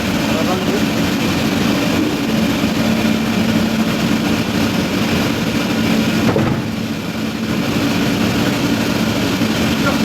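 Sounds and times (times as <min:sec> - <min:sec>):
engine-driven machine humming: 0:00.0 - 0:10.0.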